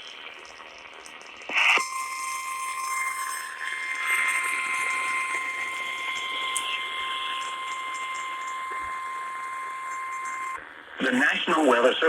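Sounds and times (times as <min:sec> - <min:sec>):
radio hiss with crackles: 0:00.0 - 0:12.0
steady alarm tone: 0:01.8 - 0:10.6.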